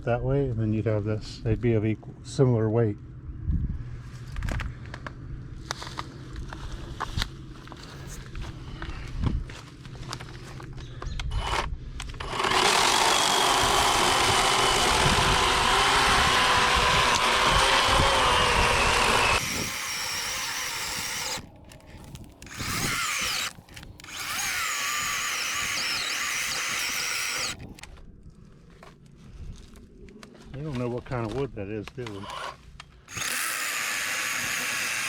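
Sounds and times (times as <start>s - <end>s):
electric chainsaw cutting log: 11.3s - 27.9s, 32.0s - 35.0s.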